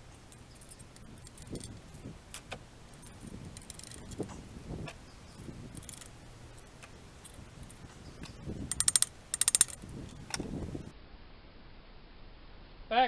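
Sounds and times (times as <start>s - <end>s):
ratchet wrench clicking: 0.2s - 1.8s, 2.4s - 4.3s, 5.7s - 10.4s
metal tools knocking: 8.2s - 9.8s.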